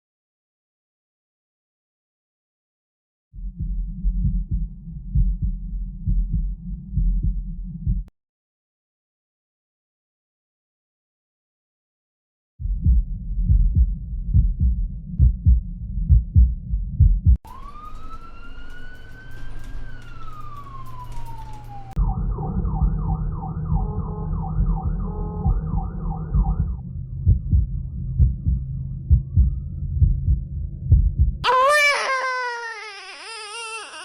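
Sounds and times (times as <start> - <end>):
heartbeat thumps: 3.4 - 8.1, 12.6 - 17.4, 22.0 - 31.4
siren wailing and yelping: 17.5 - 26.6, 31.4 - 34.0.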